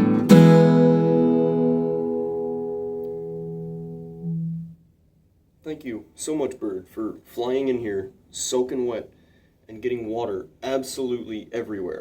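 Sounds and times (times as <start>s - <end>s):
acoustic guitar chord ringing: 0.0s - 4.8s.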